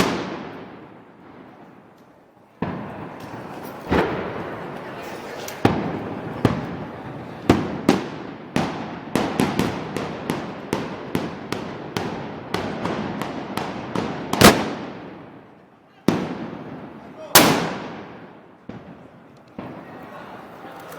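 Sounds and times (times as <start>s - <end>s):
firecrackers banging: 0.0s - 20.9s.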